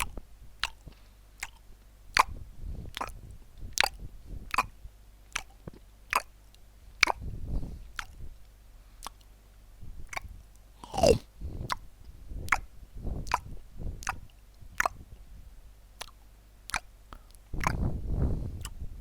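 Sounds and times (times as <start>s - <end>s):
wet chewing: 0.0s - 3.2s, 3.8s - 6.3s, 7.0s - 7.2s, 7.9s - 8.2s, 9.0s - 9.3s, 10.1s - 11.8s, 12.5s - 15.0s, 16.0s - 16.9s, 17.6s - 17.8s
crunching nachos: 10.8s - 11.2s.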